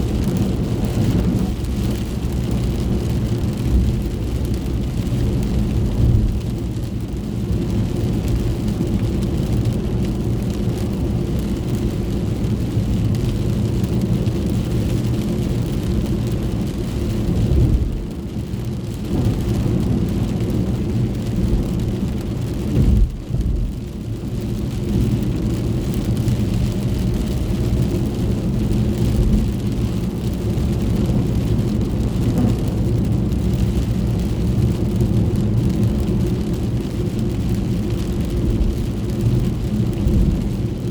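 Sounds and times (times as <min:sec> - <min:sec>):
car road and engine rumble: 0:00.0 - 0:40.9
rain hissing on car: 0:00.0 - 0:40.9.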